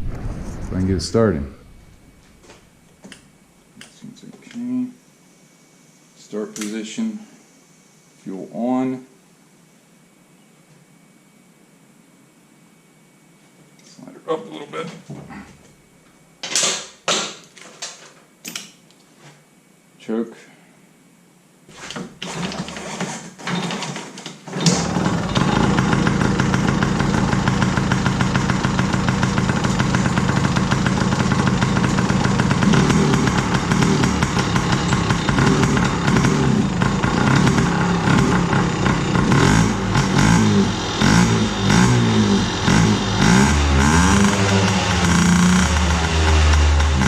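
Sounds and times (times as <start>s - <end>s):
two-stroke engine kick-started: 23.5s - 47.0s.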